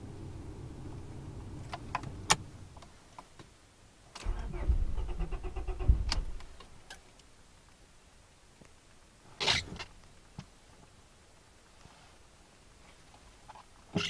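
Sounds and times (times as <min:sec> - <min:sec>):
starter cranking car engine: 0:04.2 - 0:06.4
steady low hum: 0:04.2 - 0:06.9.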